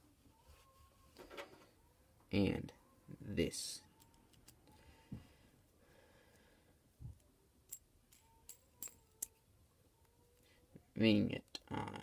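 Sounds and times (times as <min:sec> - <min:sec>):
small parts clicking together: 0:07.7 - 0:09.4.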